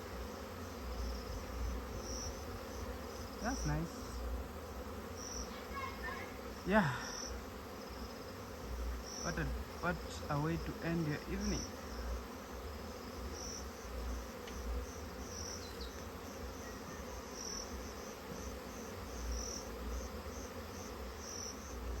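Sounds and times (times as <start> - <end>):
bees buzzing: 0.0 - 22.0.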